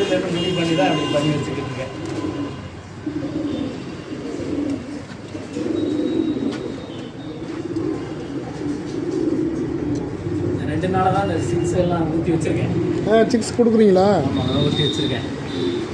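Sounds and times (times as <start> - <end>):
pigeons cooing: 0.0 - 13.8, 14.4 - 15.9.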